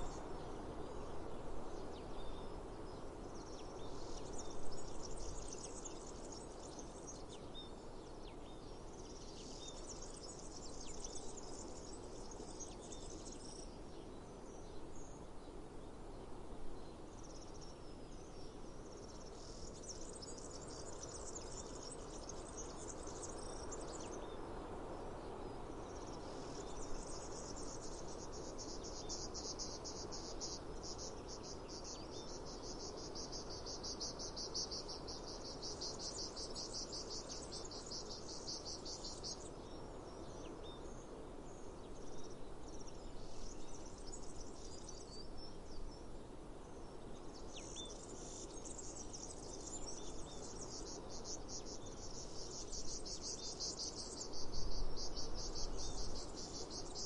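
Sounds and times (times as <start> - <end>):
steady background hiss: 0.0 - 57.0
cicadas buzzing: 47.7 - 57.0.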